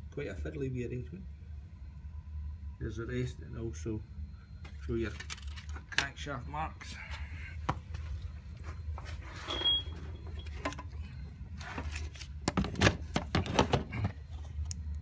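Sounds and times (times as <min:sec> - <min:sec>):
steady low hum: 0:00.0 - 0:15.0
brief high squeak: 0:09.3 - 0:10.0.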